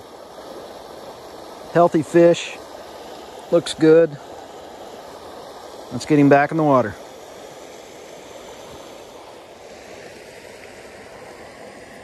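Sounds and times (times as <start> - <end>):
creek water rushing: 0.0 - 12.0.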